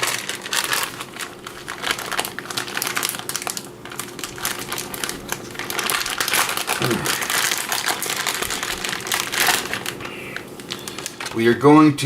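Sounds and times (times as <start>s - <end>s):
plastic packaging crinkling: 0.0s - 12.0s.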